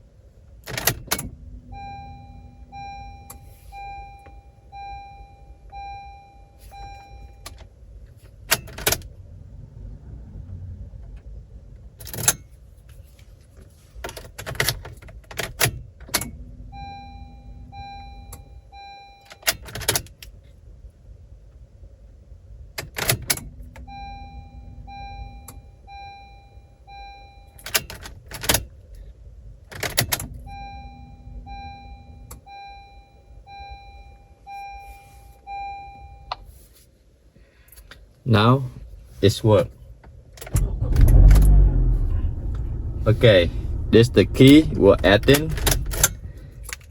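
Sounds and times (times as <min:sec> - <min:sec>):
ignition key clicks and rattle: 0:00.4 - 0:03.5, 0:06.7 - 0:09.2, 0:10.5 - 0:20.5, 0:22.7 - 0:26.0, 0:26.9 - 0:32.8, 0:40.0 - 0:46.9
short electronic beeps: 0:01.5 - 0:07.4, 0:30.4 - 0:36.3
brief low tone: 0:30.4 - 0:32.8.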